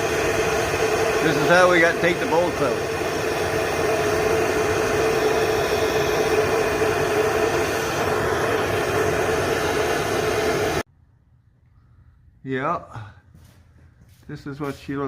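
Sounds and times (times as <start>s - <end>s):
machine hiss: 0.0s - 10.8s
machine hum: 0.0s - 12.2s.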